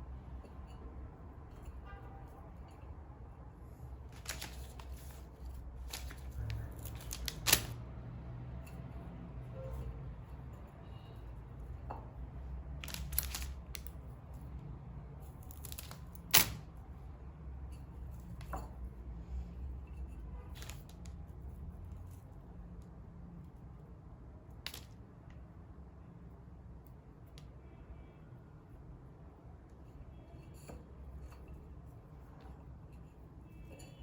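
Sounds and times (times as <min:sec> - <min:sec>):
clicks and knocks of handling: 0:04.1 - 0:07.8, 0:12.8 - 0:14.0, 0:24.6 - 0:25.4.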